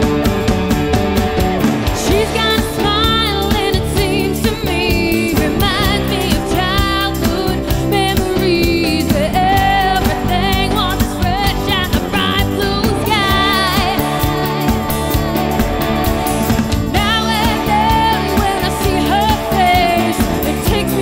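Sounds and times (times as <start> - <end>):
live rock-pop band: 0.0 - 21.0
person singing: 1.9 - 21.0.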